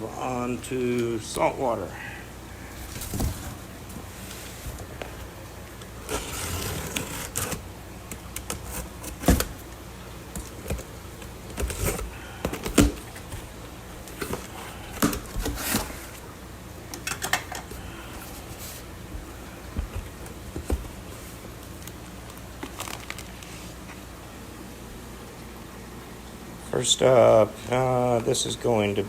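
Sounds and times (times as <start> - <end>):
steady low hum: 0.0 - 29.0
bags and boxes being handled: 2.6 - 7.6, 17.4 - 24.0.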